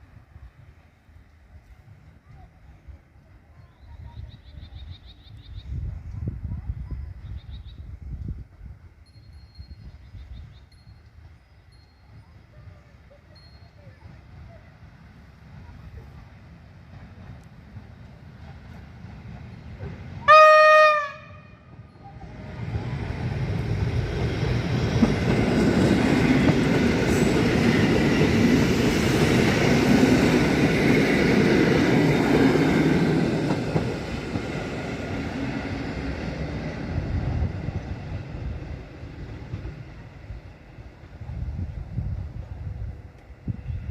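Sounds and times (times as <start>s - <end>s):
train passing by: 0.0s - 43.9s
train horn blast: 20.2s - 21.7s.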